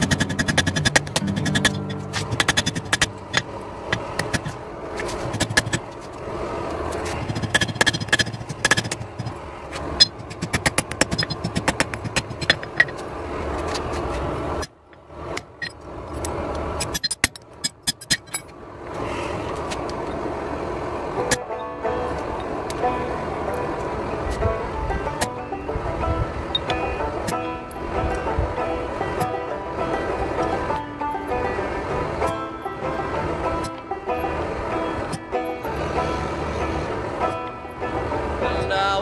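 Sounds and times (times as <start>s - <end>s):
hammer blows on hot steel: 0.0s - 5.9s
mechanical running noise: 0.0s - 18.4s.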